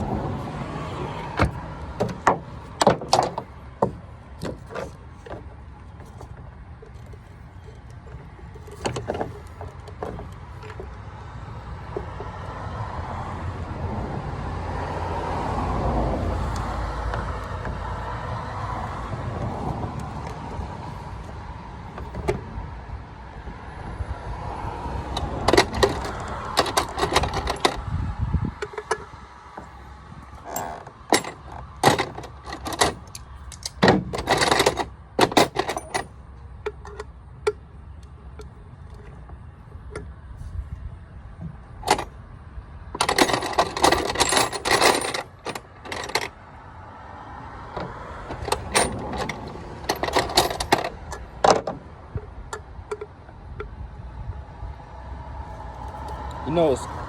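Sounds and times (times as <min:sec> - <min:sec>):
metal tools clinking and rattling: 0:00.0 - 0:12.3, 0:18.8 - 0:22.6, 0:25.2 - 0:27.8, 0:28.6 - 0:40.1, 0:41.8 - 0:42.1, 0:43.0 - 0:46.4, 0:47.8 - 0:53.7.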